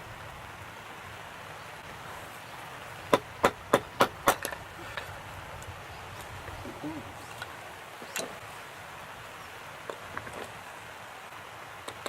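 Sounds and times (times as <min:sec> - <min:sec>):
axe chopping firewood: 0:03.1 - 0:04.6.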